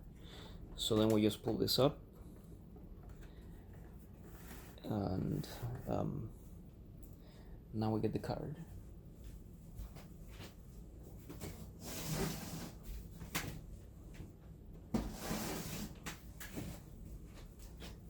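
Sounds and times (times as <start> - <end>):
scraping rustle of handling: 4.0 - 5.9, 15.0 - 18.0.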